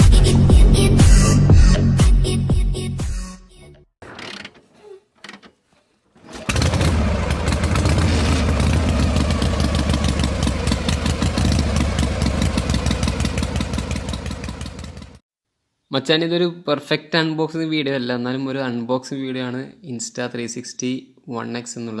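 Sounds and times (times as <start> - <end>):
engine starting and running: 6.2 - 15.2.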